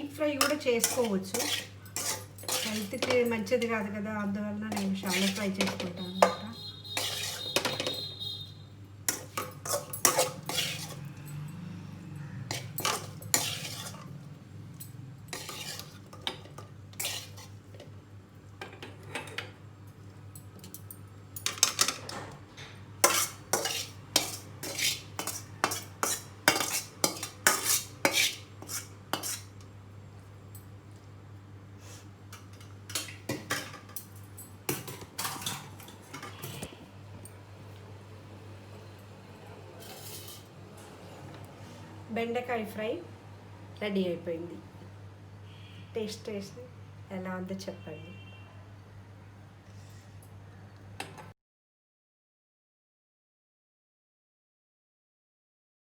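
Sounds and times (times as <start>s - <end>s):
metal spoon scraping a pan: 0.3s - 4.0s, 4.7s - 8.5s, 9.1s - 14.2s, 14.8s - 17.8s, 23.0s - 29.6s, 34.7s - 36.8s, 39.8s - 41.3s.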